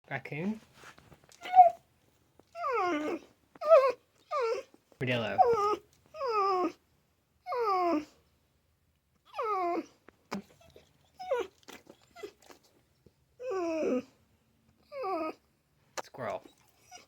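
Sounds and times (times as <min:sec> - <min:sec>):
dog whining and yipping: 0:01.4 - 0:01.9, 0:02.5 - 0:06.8, 0:07.4 - 0:08.2, 0:09.2 - 0:12.6, 0:13.4 - 0:14.2, 0:14.8 - 0:15.5, 0:16.4 - 0:17.0.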